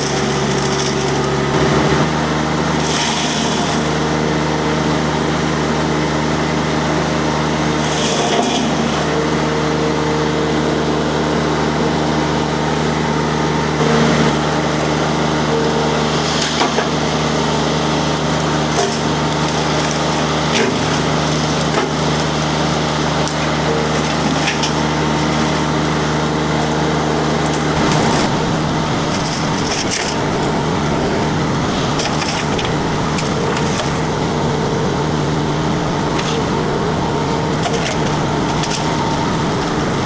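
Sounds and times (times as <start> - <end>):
wood crackling and splintering: 0.0 - 4.5, 13.8 - 40.0
diesel engine under load: 0.0 - 40.0.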